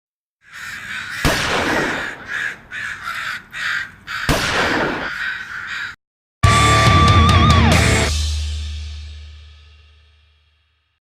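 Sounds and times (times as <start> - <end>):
crows cawing: 0.4 - 6.0.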